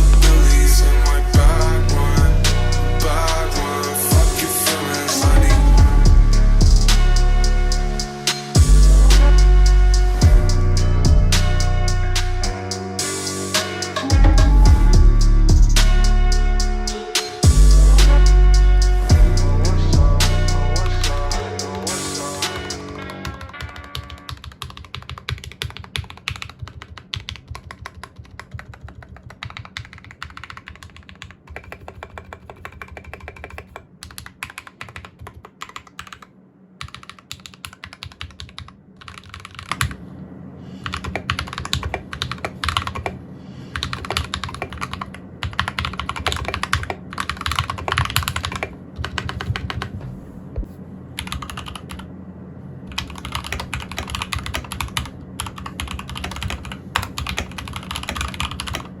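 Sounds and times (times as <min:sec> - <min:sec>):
mechanical keyboard typing: 0:23.2 - 0:40.0, 0:40.9 - 0:43.2, 0:43.8 - 0:49.9, 0:51.2 - 0:52.0, 0:52.9 - 0:58.9.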